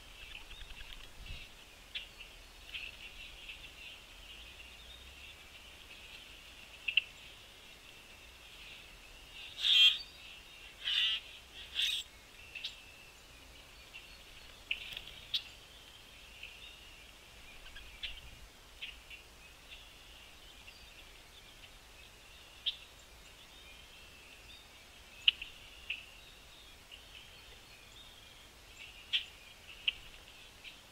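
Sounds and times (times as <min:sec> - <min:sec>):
high background bird chorus: 0:00.0 - 0:30.9
small birds chirping: 0:00.0 - 0:30.9
harsh bird calls: 0:09.4 - 0:12.7.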